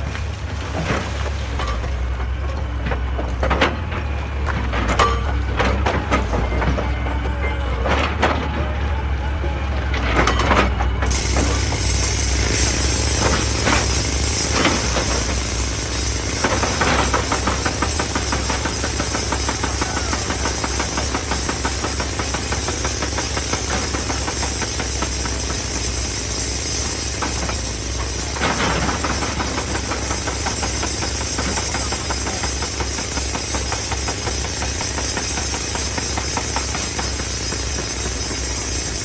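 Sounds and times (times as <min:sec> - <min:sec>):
excavator diesel engine clattering: 0:00.0 - 0:39.0.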